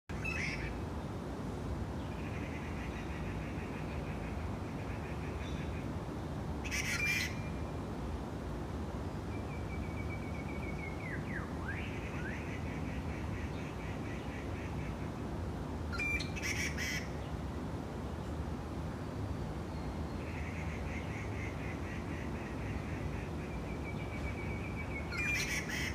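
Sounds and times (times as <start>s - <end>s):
bird squawking: 0.2s - 0.7s, 6.7s - 7.5s, 25.1s - 25.9s.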